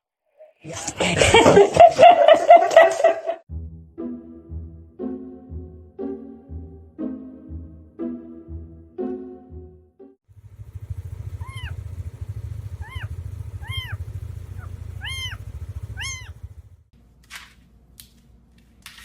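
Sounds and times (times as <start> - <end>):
cat mewing: 11.3 - 11.8, 12.7 - 16.5
cat purring: 11.3 - 12.0, 12.7 - 16.3.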